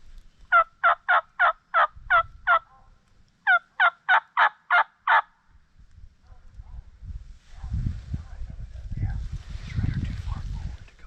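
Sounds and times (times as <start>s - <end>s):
turkey yelping: 0.5s - 2.9s, 3.5s - 5.3s.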